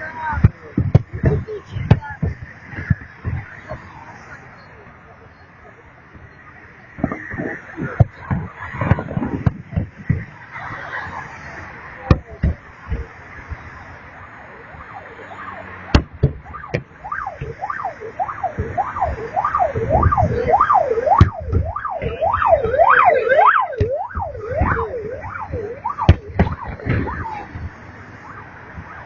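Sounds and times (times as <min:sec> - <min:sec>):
firework bangs and crackles: 0:00.0 - 0:04.4, 0:06.2 - 0:14.1, 0:15.9 - 0:28.0
fireworks whistling: 0:15.4 - 0:28.4.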